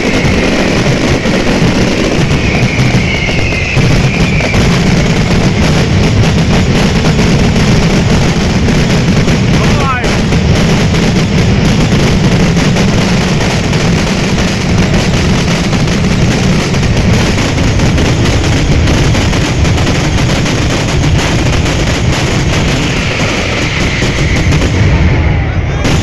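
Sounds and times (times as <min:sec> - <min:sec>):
fireworks bangs and crackling: 0:00.0 - 0:26.0.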